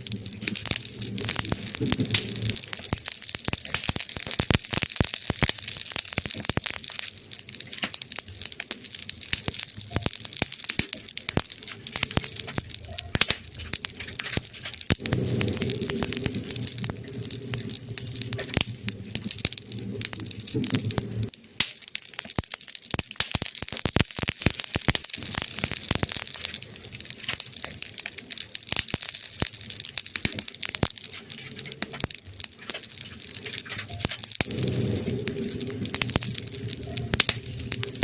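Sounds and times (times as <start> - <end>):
campfire crackling and popping: 0.0 - 38.0
low rumble: 11.4 - 21.3, 33.3 - 38.0.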